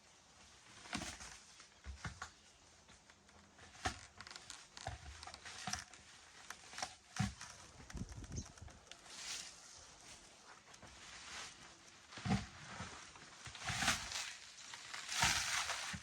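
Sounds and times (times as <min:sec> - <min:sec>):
faint knocks and scrapes: 0:00.7 - 0:14.5
packing material tearing and rustling: 0:03.8 - 0:16.0.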